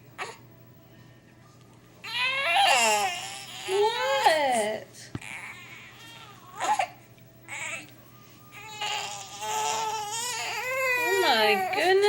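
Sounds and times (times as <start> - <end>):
infant crying: 2.0 - 4.5, 5.2 - 7.9, 8.6 - 12.0.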